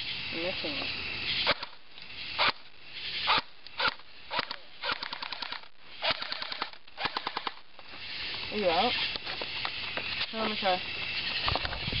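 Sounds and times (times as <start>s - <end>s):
airsoft gun shots: 1.4s - 1.8s, 2.4s - 7.7s.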